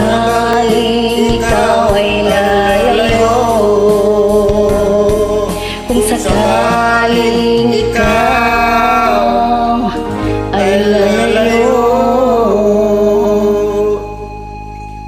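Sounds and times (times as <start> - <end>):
person singing love ballad: 0.0 - 14.9
ballad accompaniment: 0.0 - 15.0.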